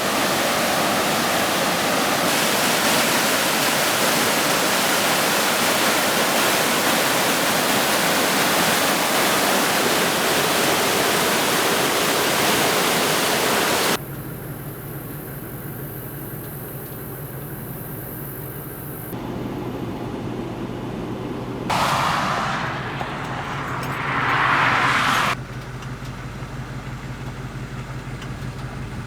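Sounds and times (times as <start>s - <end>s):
fast-flowing water rushing: 0.0s - 14.0s.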